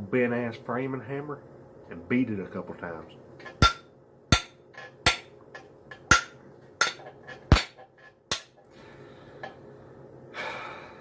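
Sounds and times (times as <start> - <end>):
hammer striking saw blade: 3.5 - 5.3, 5.9 - 8.6.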